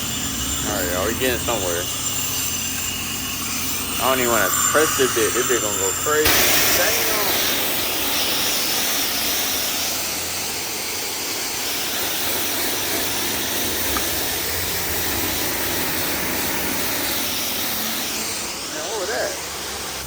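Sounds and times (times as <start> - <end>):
car wash equipment rushing hiss: 0.0 - 20.0.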